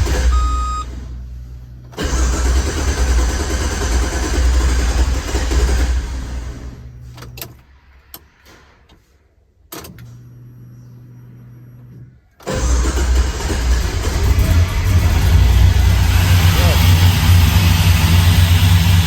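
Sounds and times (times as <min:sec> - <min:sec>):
car engine idling: 0:00.0 - 0:07.5, 0:12.4 - 0:19.0
faint low hum: 0:09.8 - 0:12.4.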